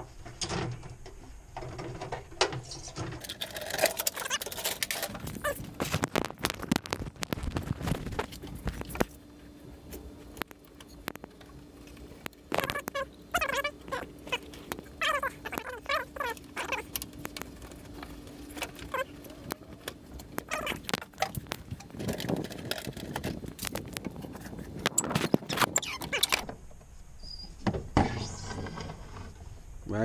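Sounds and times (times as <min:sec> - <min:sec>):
wiring rustling: 0:01.6 - 0:26.5
animal whining cries: 0:04.0 - 0:05.7, 0:12.5 - 0:17.6, 0:18.4 - 0:19.7, 0:20.4 - 0:21.5, 0:25.5 - 0:26.4.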